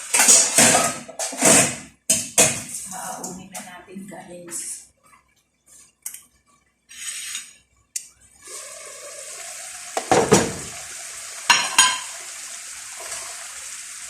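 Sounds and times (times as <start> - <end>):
food sizzling in a frying pan: 0.0 - 0.7, 8.4 - 14.0
metal utensil scraping a pan: 0.0 - 1.8.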